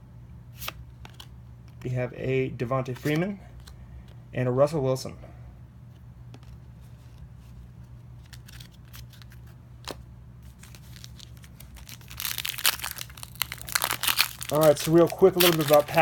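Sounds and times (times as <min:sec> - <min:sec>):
plastic wrapper tearing and crinkling: 0:10.5 - 0:16.0
trading cards clicking: 0:10.9 - 0:16.0.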